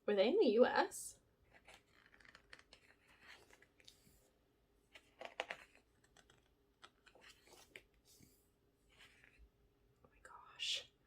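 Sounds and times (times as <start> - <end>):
glossy pages turning: 1.5 - 4.1, 4.9 - 8.0.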